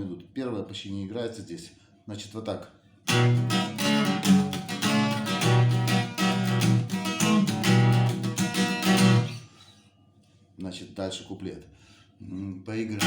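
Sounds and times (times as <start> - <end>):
acoustic guitar strumming: 3.1 - 9.6.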